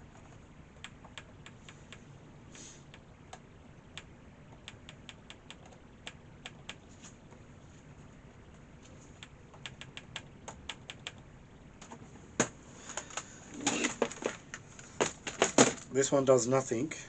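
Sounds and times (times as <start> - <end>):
low steady hum: 0.0 - 17.0
keyboard typing: 2.9 - 6.9, 9.2 - 11.3.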